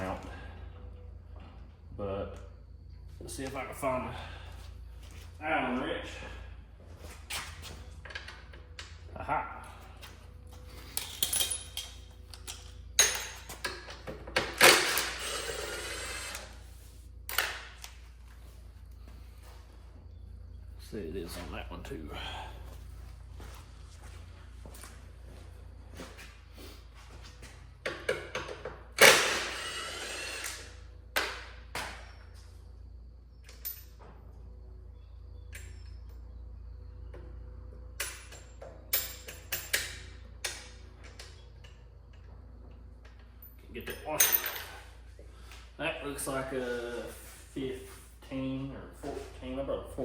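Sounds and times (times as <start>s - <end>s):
metal tools clinking: 10.4s - 16.4s, 43.2s - 45.0s.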